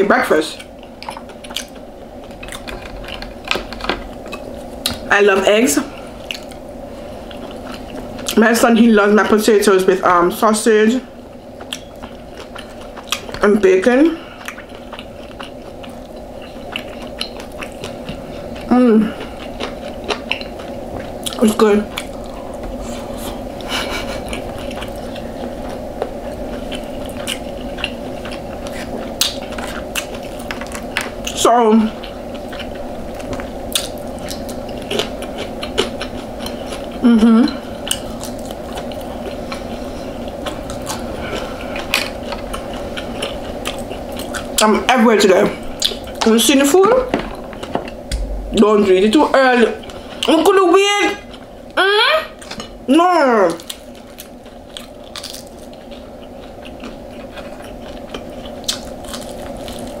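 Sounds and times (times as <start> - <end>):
low hum: 0.0 - 60.0
chewing and biting: 0.6 - 5.0, 11.6 - 13.5, 14.4 - 31.4, 32.0 - 44.7, 53.6 - 60.0
person humming: 37.0 - 37.7.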